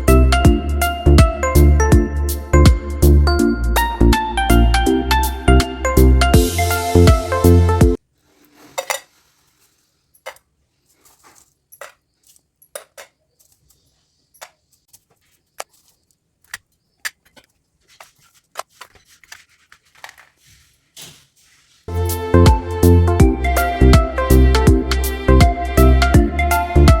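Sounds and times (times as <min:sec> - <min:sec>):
small objects clicking and tapping: 0:08.5 - 0:20.4.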